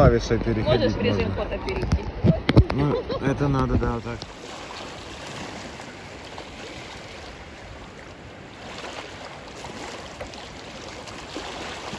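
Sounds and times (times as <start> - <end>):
sea water sloshing and lapping: 3.7 - 11.9.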